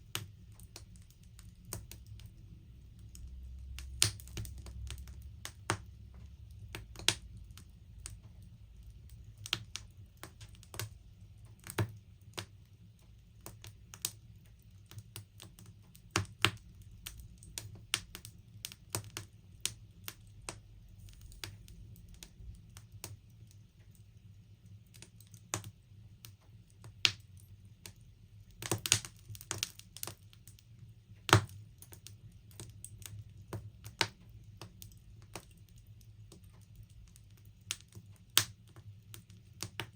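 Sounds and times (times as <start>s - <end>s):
faint low rumble: 0.0s - 24.9s.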